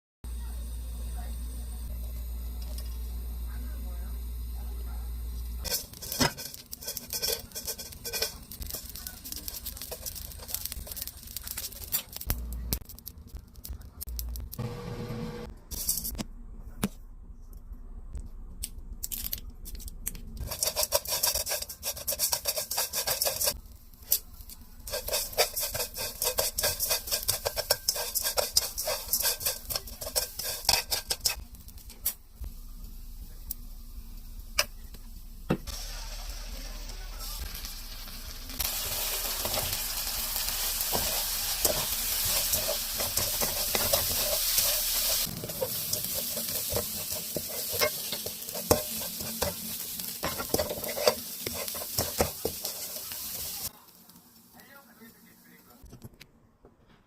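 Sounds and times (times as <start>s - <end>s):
dried fish rattling in a pan: 5.6s - 13.3s, 19.1s - 23.6s, 24.2s - 31.8s, 38.6s - 53.7s.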